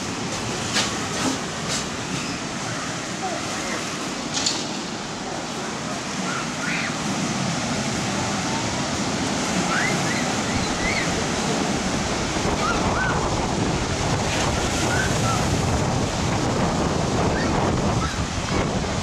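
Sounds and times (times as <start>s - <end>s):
rough surf breaking on beach: 0.0s - 19.0s
faint high calls: 5.7s - 7.2s, 9.5s - 11.3s
wind buffeting microphone: 6.0s - 19.0s.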